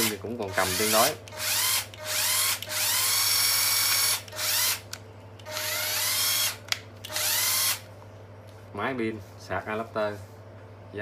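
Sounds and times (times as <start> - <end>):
cordless drill motor whining: 0.0 - 7.8.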